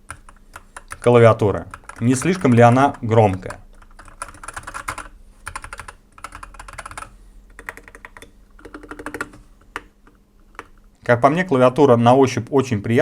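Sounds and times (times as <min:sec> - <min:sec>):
mechanical keyboard typing: 0:00.0 - 0:09.9.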